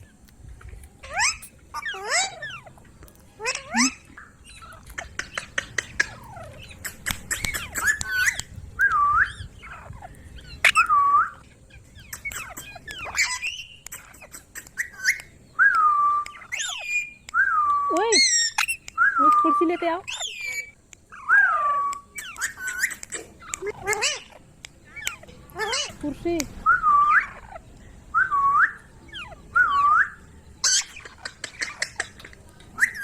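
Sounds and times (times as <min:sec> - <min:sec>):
parakeet clicks and squawks: 0:00.0 - 0:08.6, 0:11.7 - 0:15.4, 0:18.0 - 0:26.0, 0:30.6 - 0:33.0
parakeet whistled calls: 0:01.0 - 0:02.8, 0:03.4 - 0:25.9, 0:26.6 - 0:32.2, 0:32.8 - 0:33.0.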